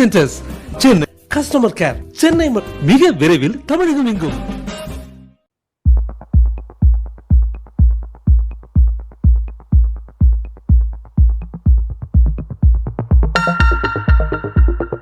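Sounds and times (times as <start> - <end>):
heavy kick drum: 5.8 - 15.0
electronic dance music: 5.9 - 15.0
bright synth line: 13.4 - 15.0.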